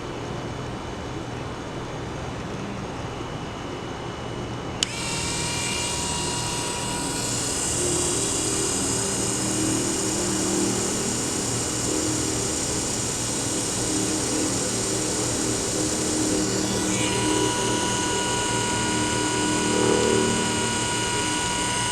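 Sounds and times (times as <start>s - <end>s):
electric motor whining: 4.8s - 21.9s
motor switch click: 4.8s - 21.9s.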